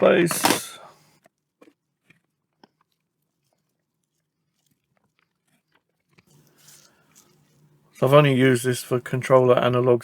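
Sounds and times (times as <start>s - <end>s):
handling rustle: 0.2s - 0.8s.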